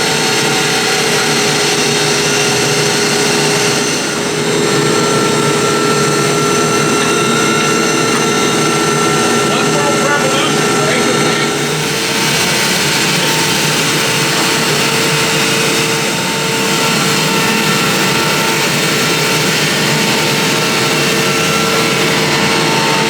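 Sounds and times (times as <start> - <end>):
sawmill engine running under load: 0.0 - 23.0.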